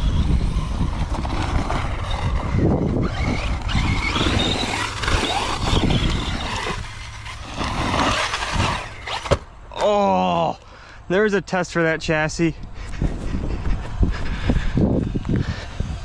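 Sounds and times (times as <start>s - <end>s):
wind rumble on microphone: 0.0s - 9.1s, 12.6s - 16.0s
electric motor whine: 0.0s - 9.5s
tyres on dirt: 0.0s - 16.0s.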